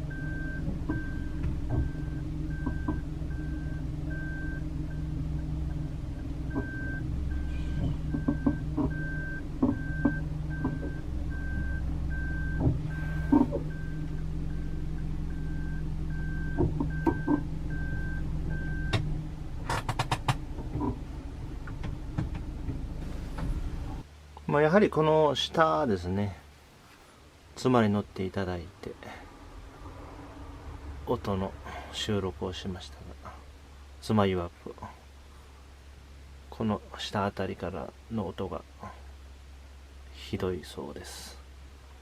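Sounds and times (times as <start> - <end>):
vehicle body clicks and creaks: 0.0 - 3.6, 5.3 - 15.4, 16.1 - 24.0
reverse warning beeps: 0.0 - 5.8, 6.5 - 19.0
engine running: 0.0 - 24.4
sharp clicks: 18.9 - 21.0.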